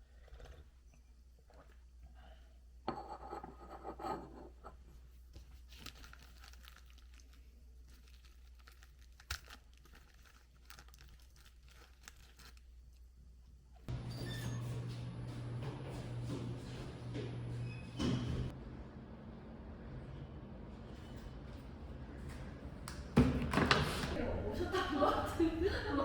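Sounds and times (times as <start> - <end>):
rustling and crinkling handling: 5.0 - 13.2.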